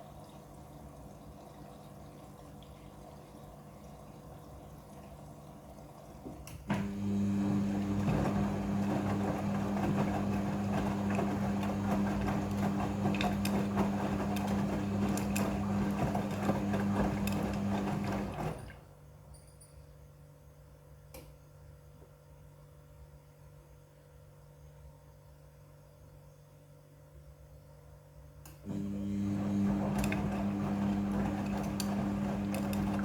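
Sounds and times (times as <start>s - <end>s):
wet laundry churning: 0.0s - 18.8s, 28.7s - 33.0s
motor hum: 6.6s - 18.7s, 28.7s - 33.0s
washing machine drum turning: 6.6s - 18.8s, 28.7s - 33.0s.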